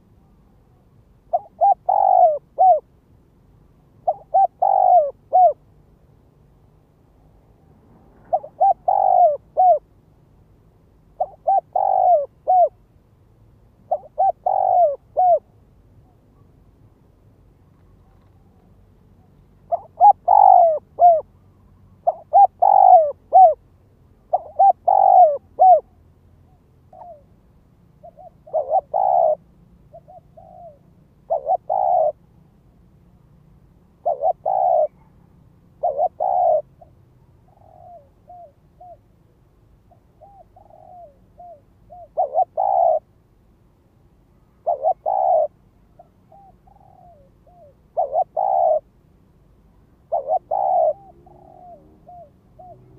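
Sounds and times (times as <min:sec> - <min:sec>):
dove cooing: 0:01.3 - 0:02.9, 0:04.0 - 0:05.6, 0:08.0 - 0:09.9, 0:11.2 - 0:12.8, 0:13.9 - 0:15.5, 0:19.6 - 0:21.3, 0:21.9 - 0:23.6, 0:24.2 - 0:27.4, 0:28.0 - 0:32.2, 0:34.0 - 0:39.1, 0:39.9 - 0:43.1, 0:44.6 - 0:48.9, 0:50.0 - 0:52.9.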